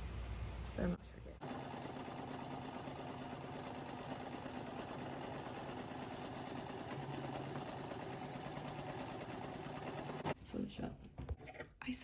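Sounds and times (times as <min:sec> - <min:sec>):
sewing machine running: 0:01.4 - 0:10.4.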